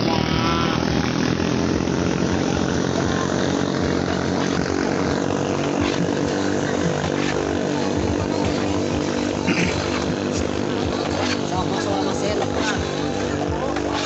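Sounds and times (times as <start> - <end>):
racing boat engines at high revs: 0.0 - 14.0.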